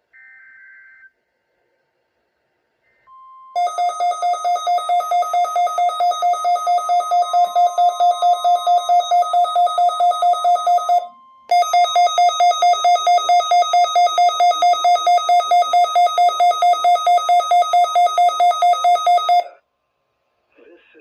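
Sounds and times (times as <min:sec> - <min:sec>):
alert radio alarm beeping: 0:03.5 - 0:19.5.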